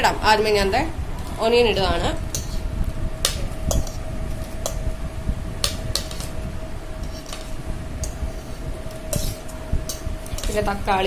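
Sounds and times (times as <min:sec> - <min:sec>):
steady hum: 0:00.0 - 0:11.0
spoon clinking against a bowl: 0:03.7 - 0:04.0.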